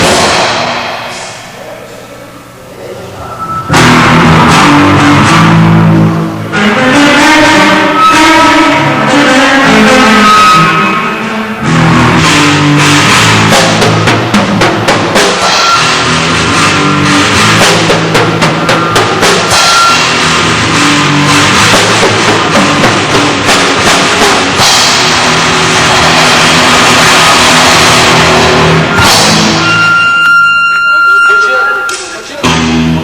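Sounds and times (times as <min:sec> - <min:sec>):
drum kit beating rapidly: 0:00.0 - 0:01.6, 0:03.7 - 0:07.6, 0:11.6 - 0:30.0
live rock band: 0:03.4 - 0:30.4.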